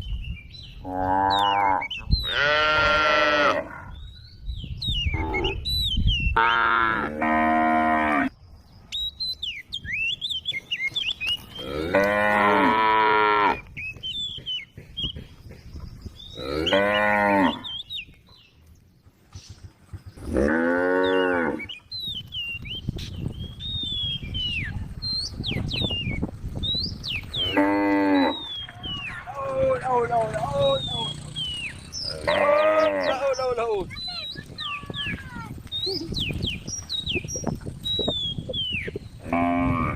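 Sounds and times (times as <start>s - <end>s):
cows mooing: 0.8s - 4.0s, 6.4s - 8.3s, 11.5s - 13.7s, 16.3s - 17.8s, 20.3s - 21.7s, 27.3s - 28.7s, 29.8s - 33.4s, 39.2s - 39.9s.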